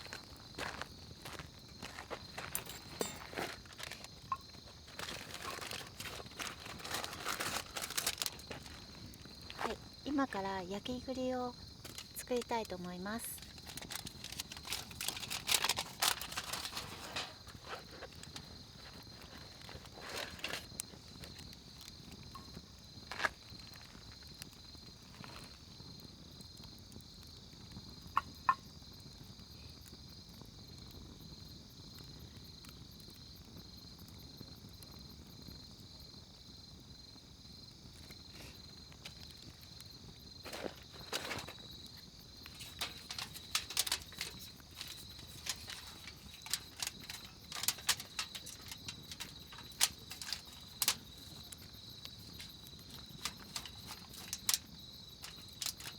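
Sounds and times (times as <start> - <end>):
night insects chirping: 0.0 - 55.9
handling knocks and clicks: 2.4 - 8.7, 42.5 - 55.9.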